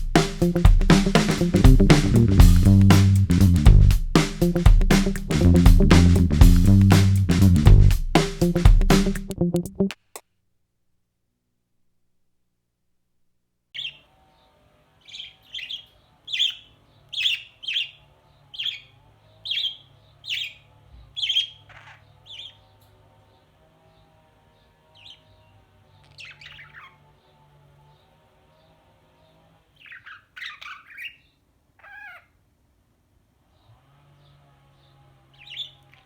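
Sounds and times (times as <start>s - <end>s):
budgie chirping: 0.0s - 9.9s.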